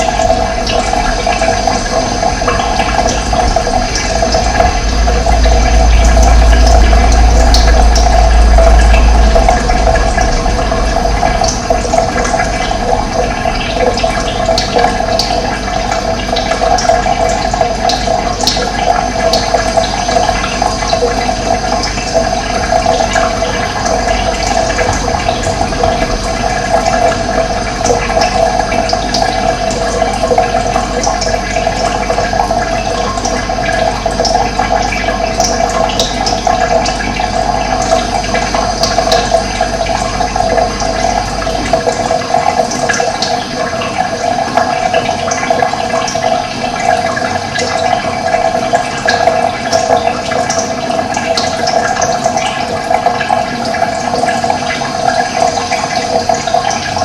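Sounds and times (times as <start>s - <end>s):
low rumble: 0.0s - 16.5s, 20.2s - 31.0s
rushing water: 0.0s - 57.0s.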